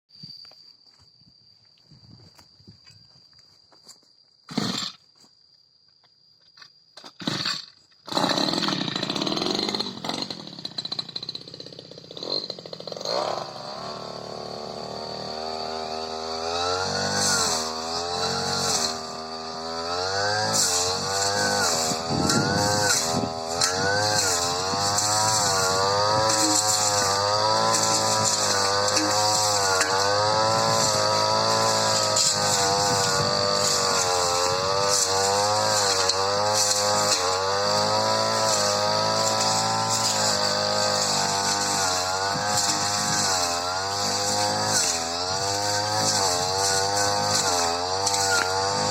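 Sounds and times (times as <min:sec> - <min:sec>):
brush cutter engine revving: 0:04.5 - 0:05.0, 0:07.2 - 0:48.9.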